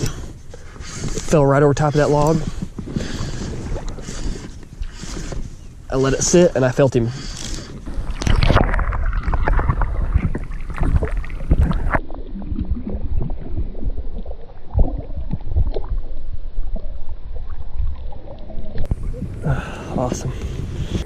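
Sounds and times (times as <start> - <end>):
water splashing and sloshing: 0.0 - 21.0
rumbling on microphone: 7.2 - 21.0.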